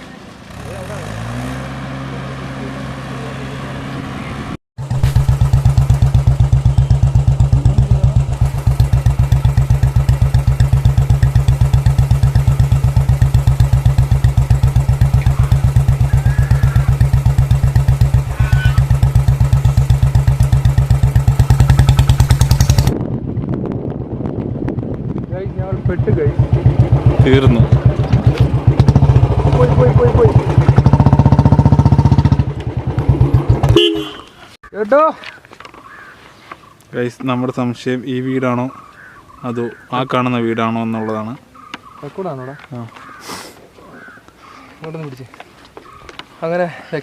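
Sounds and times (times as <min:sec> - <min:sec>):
motorcycle engine pulsing: 0:04.8 - 0:34.5.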